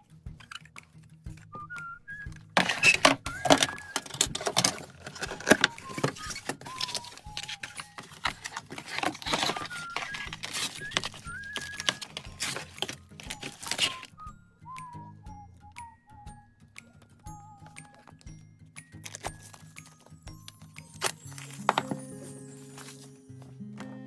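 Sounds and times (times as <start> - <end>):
soft background music: 0.0 - 24.0
small objects clicking and rustling: 2.6 - 14.1, 18.9 - 20.2, 20.9 - 22.1.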